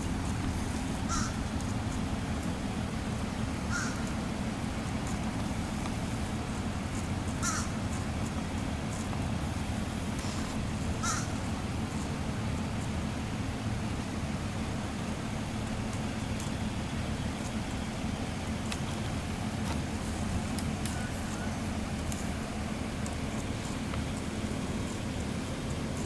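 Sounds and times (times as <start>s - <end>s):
low background rumble: 0.0s - 26.0s
short bird calls: 1.0s - 1.5s, 3.6s - 4.2s, 7.3s - 7.8s, 10.2s - 11.4s.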